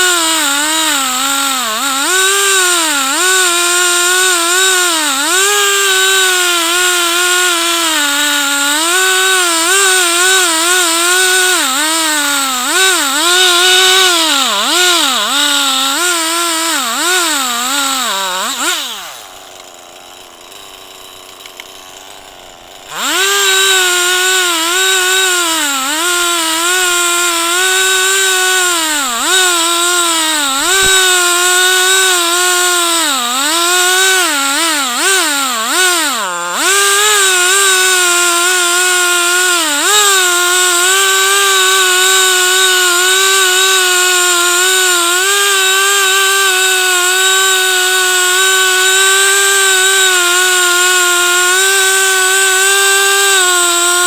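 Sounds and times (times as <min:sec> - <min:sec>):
chainsaw revving and cutting: 0:00.0 - 0:54.0.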